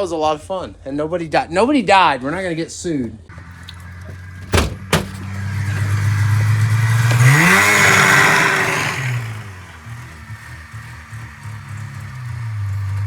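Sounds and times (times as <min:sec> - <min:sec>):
two-stroke engine revving: 0:03.3 - 0:13.0
sharp knocks: 0:04.5 - 0:05.3.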